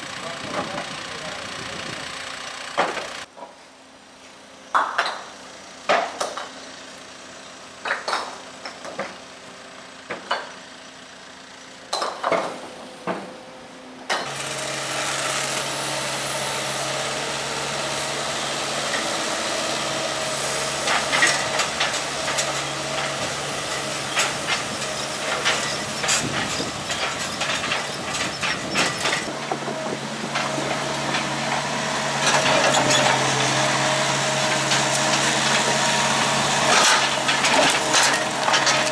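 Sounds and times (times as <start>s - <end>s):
heavy machine engine running: 0.0s - 3.3s, 5.0s - 38.9s
rocks crunching while being loaded: 18.8s - 33.9s, 34.5s - 38.9s.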